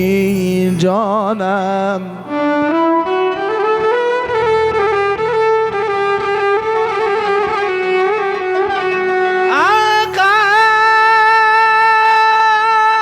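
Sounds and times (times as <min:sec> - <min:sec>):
violin playing ornamented phrase: 0:05.5 - 0:12.5.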